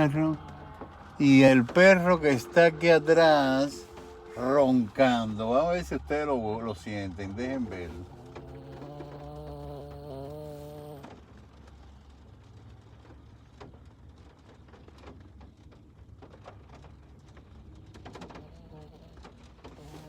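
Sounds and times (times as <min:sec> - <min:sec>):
dog snoring: 0:07.7 - 0:11.2, 0:18.1 - 0:20.0.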